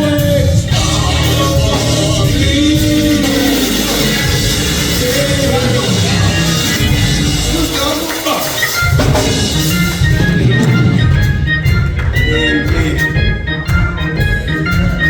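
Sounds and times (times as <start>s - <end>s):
long held singing: 0.0s - 8.8s
band with bass and drums: 0.0s - 15.0s.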